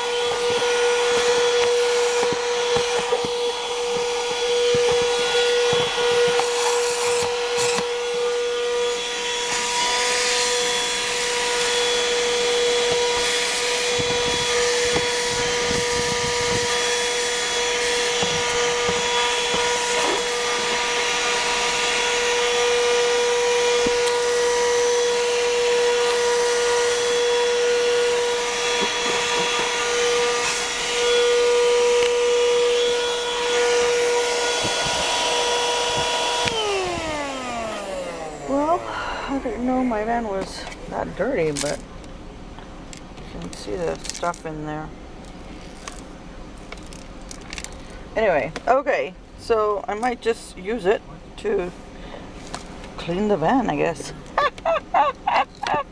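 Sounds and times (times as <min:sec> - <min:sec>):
handheld vacuum whining: 0:00.0 - 0:40.8, 0:53.7 - 0:55.9.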